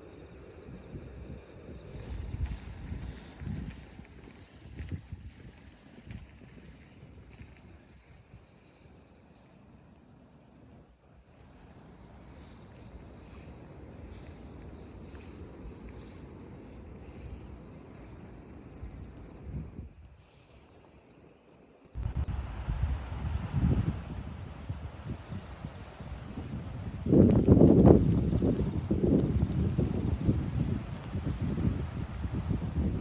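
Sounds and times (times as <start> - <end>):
wind buffeting microphone: 0.5 - 7.6, 22.0 - 33.0
wind rushing: 22.0 - 33.0.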